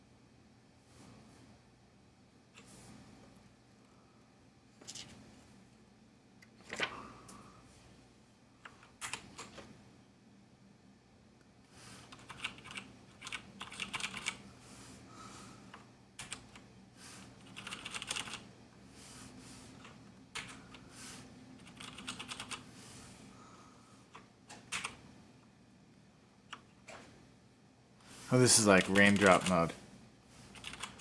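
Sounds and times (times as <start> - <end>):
mechanical keyboard clicking: 12.1 - 14.4, 16.2 - 16.6, 17.4 - 18.4, 20.4 - 20.8, 21.6 - 22.6, 24.6 - 25.0, 30.6 - 31.0.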